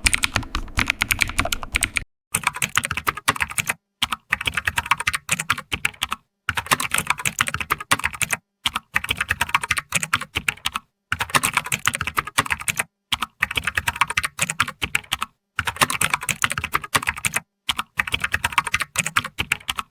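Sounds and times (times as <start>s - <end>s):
typing on computer keyboard: 0.0s - 19.9s.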